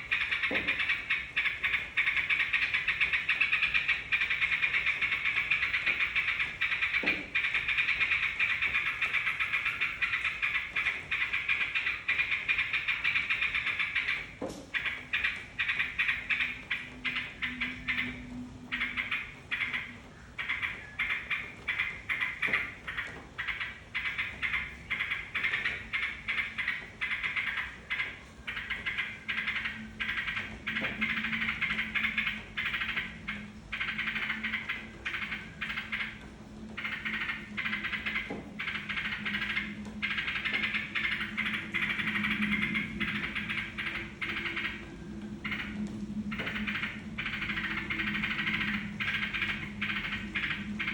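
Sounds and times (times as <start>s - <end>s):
bird chattering song: 0.0s - 50.9s.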